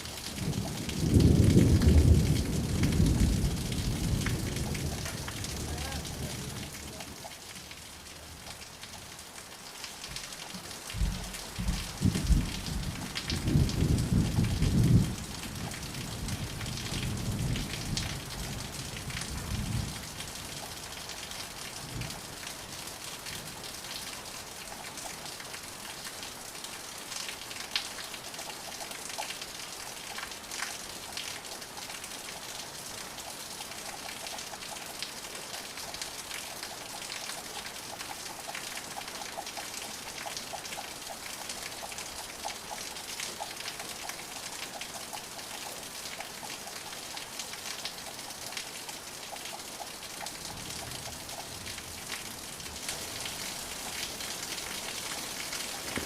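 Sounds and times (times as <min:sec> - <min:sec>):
rain drop hits: 0:00.0 - 0:56.0
steady rain: 0:00.0 - 0:56.0
thunder rumble: 0:00.4 - 0:07.0, 0:11.0 - 0:15.2.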